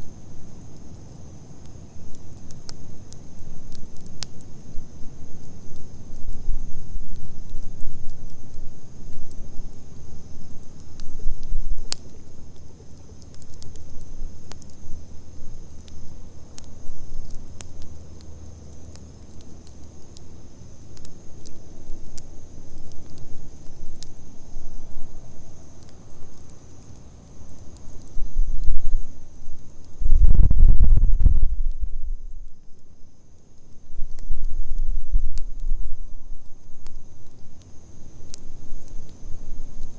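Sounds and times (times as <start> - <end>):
bonfire crackling and popping: 0.0 - 39.9
high insect trill: 0.0 - 39.9
low rumble: 30.0 - 32.4.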